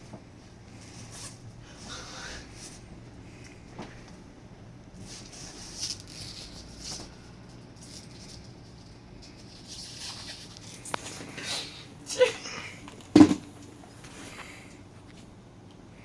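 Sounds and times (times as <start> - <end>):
rustling and handling: 0.0 - 4.2, 5.0 - 15.3
soft crinkles: 5.0 - 11.8.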